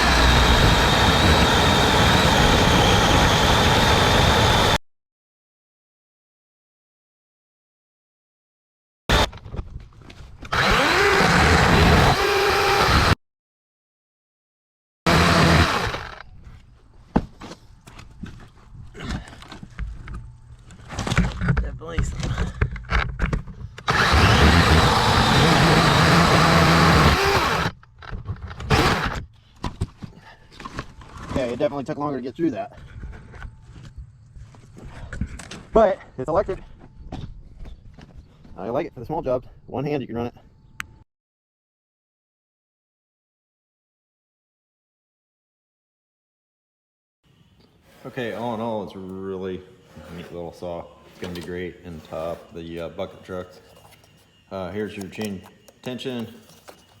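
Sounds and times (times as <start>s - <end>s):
battery chainsaw cutting branch: 0.0s - 4.8s, 10.4s - 13.2s, 15.1s - 16.2s, 23.8s - 27.8s, 28.6s - 29.2s.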